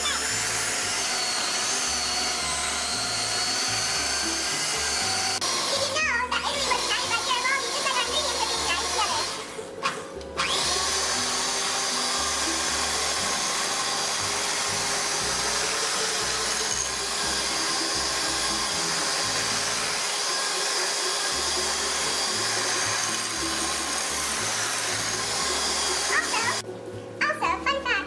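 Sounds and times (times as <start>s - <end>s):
electric mixer running: 0.0s - 26.6s.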